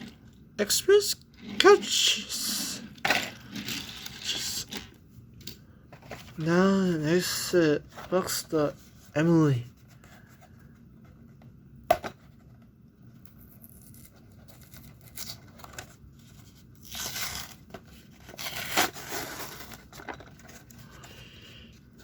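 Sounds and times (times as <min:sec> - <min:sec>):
packaging ripping and crinkling: 0:16.8 - 0:20.7.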